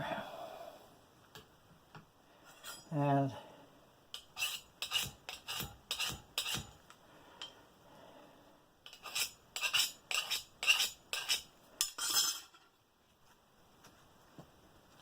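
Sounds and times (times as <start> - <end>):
metal spoon scraping scissor blade: 4.2 - 6.8, 8.9 - 12.5.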